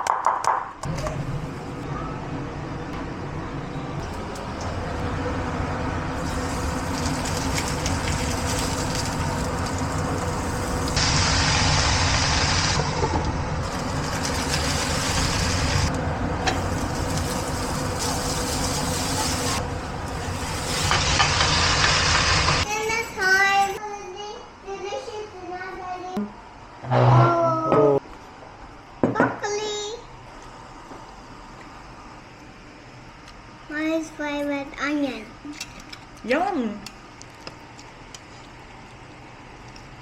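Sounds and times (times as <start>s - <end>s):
kitchen exhaust fan humming: 0.8s - 26.2s, 28.5s - 40.0s
food sizzling in a pan: 6.2s - 13.0s, 13.6s - 15.9s, 16.5s - 22.7s.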